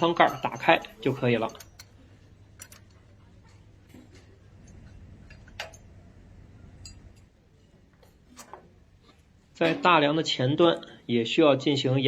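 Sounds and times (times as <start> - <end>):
light metallic clinks: 0.0 - 3.1, 6.7 - 7.3
low steady hum: 0.0 - 11.8.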